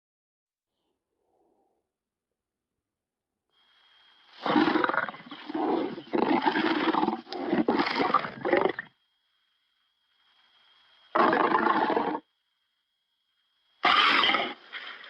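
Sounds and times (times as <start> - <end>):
lion roaring: 4.4 - 8.9, 11.1 - 12.3, 13.8 - 14.6.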